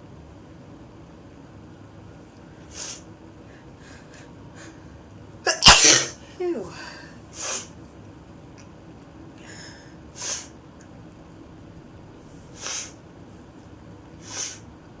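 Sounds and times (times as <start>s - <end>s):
person sniffling: 5.5s - 7.7s.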